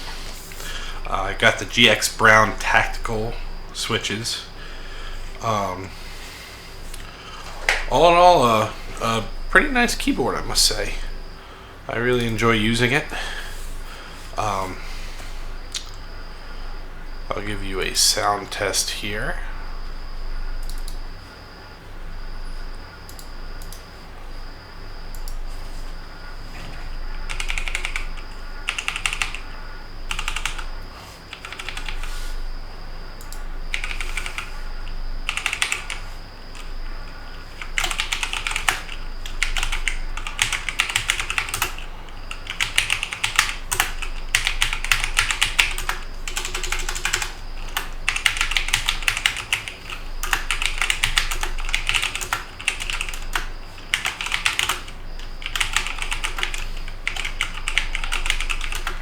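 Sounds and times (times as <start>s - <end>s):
typing on mechanical keyboard: 27.3s - 29.4s, 30.1s - 30.7s, 31.3s - 32.1s, 33.7s - 34.5s, 35.3s - 36.0s, 37.6s - 59.0s.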